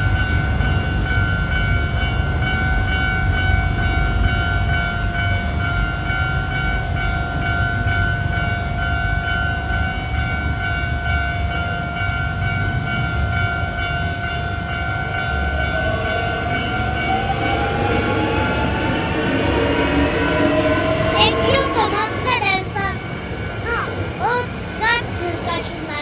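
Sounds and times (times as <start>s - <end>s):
train wheels rumbling on rails: 0.0s - 26.0s
train motor whine: 14.6s - 23.7s.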